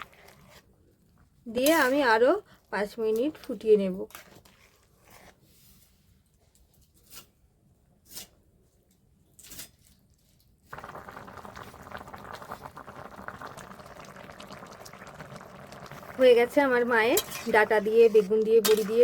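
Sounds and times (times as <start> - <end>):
curry bubbling at the boil: 10.4 - 19.0.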